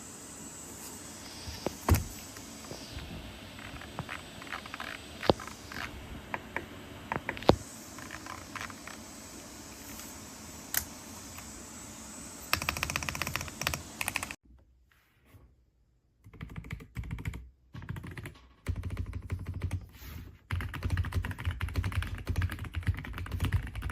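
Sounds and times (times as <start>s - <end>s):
mechanical keyboard typing: 12.5s - 14.4s, 16.2s - 19.8s, 20.5s - 23.9s.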